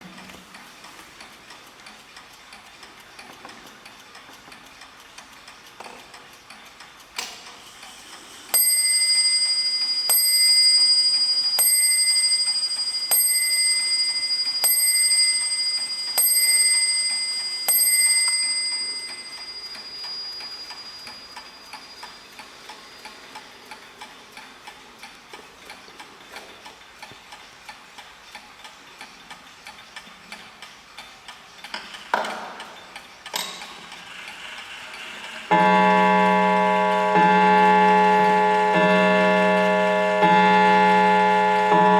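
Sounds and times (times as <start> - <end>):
mantel clock ticking: 0.0 - 41.9
click: 1.2 - 7.9
clock striking: 8.5 - 26.5, 31.8 - 41.9.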